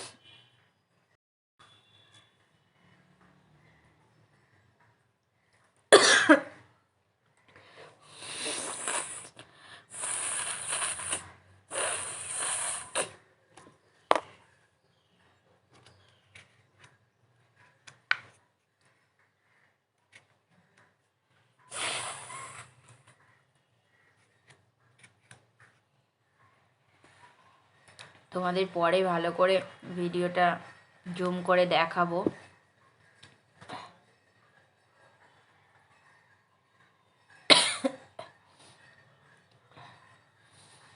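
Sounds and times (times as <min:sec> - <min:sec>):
person blowing nose: 0:08.1 - 0:13.2, 0:21.7 - 0:22.8.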